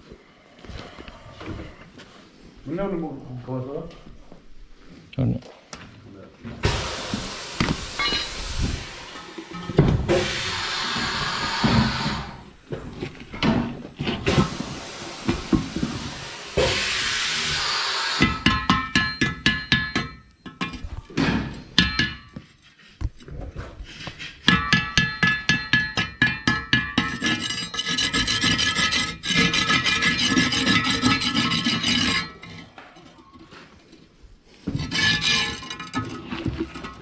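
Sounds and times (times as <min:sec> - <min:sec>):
hand scraping rubber tyre: 0:27.0 - 0:37.0.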